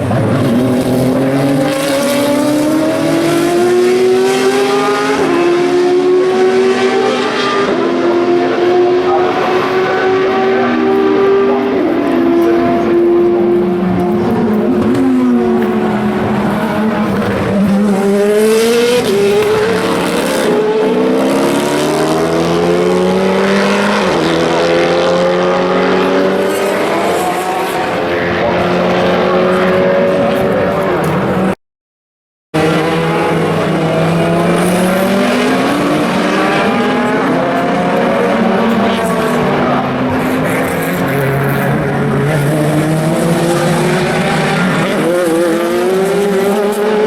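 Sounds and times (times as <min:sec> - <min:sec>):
race car engines accelerating: 0:00.0 - 0:31.6, 0:32.6 - 0:47.0.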